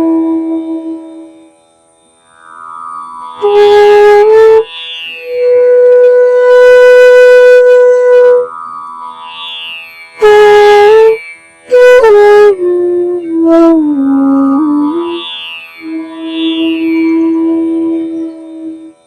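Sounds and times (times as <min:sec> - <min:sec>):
wind instrument playing held notes: 0:03.4 - 0:08.6, 0:10.0 - 0:19.0.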